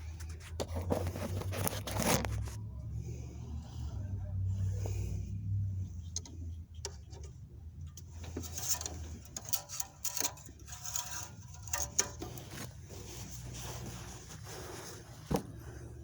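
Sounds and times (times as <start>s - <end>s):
hands handling parts: 0.0s - 2.6s, 5.9s - 16.0s.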